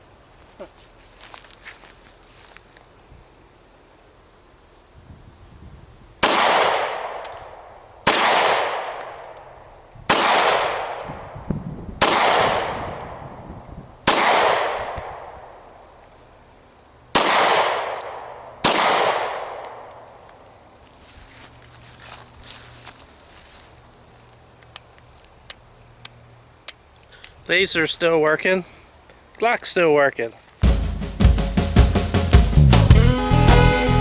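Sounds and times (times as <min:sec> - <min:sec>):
pistol shots with echo: 0:06.2 - 0:07.3, 0:08.0 - 0:09.4, 0:10.1 - 0:11.1, 0:12.0 - 0:13.2, 0:14.0 - 0:15.3, 0:17.1 - 0:19.9.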